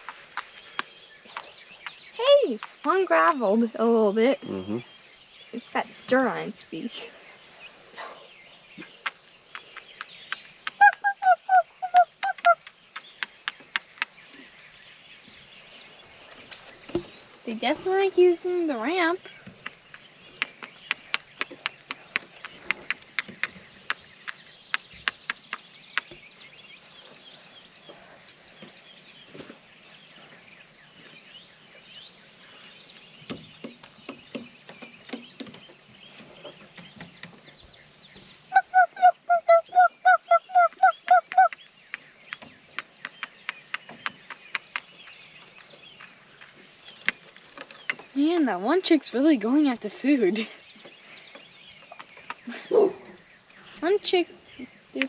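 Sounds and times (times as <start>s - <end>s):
beaks pecking food clicks: 0.0s - 3.4s, 8.8s - 14.9s, 16.3s - 26.5s, 39.0s - 52.6s, 53.2s - 55.0s.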